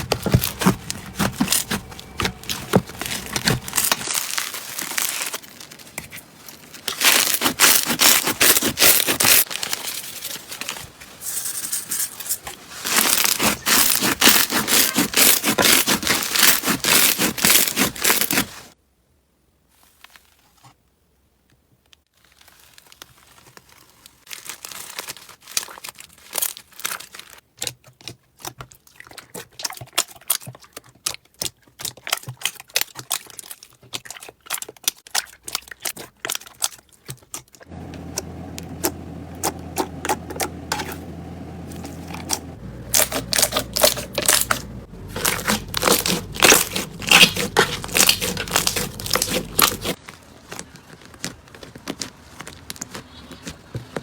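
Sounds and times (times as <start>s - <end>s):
crunchy slime crackling and popping: 0.0s - 9.6s, 12.9s - 18.5s, 42.1s - 53.7s
steady low hum: 37.7s - 50.0s.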